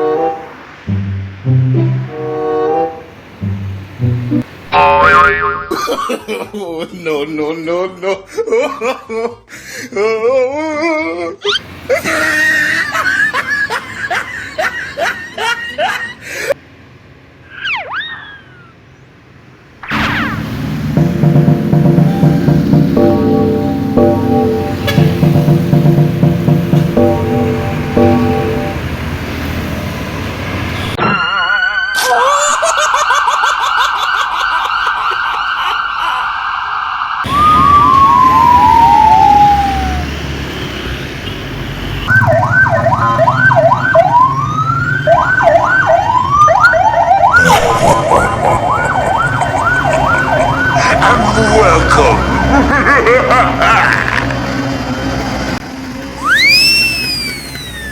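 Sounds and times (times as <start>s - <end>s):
short falling siren chirps: 0.0s - 5.6s, 17.5s - 18.8s, 19.8s - 29.1s, 36.8s - 40.3s, 42.1s - 52.6s, 56.2s - 57.9s
electronic police siren warbling: 0.0s - 5.7s, 17.5s - 18.7s, 19.8s - 28.8s, 30.9s - 40.2s, 42.1s - 52.6s, 56.2s - 57.9s
wobbling comic cry: 4.7s - 6.2s, 10.3s - 13.8s, 37.3s - 40.2s, 47.3s - 54.4s, 56.2s - 57.9s
laughter with rising squeals: 5.5s - 7.0s, 7.6s - 16.6s, 17.5s - 18.9s, 31.0s - 40.2s, 42.1s - 55.2s, 56.1s - 57.9s.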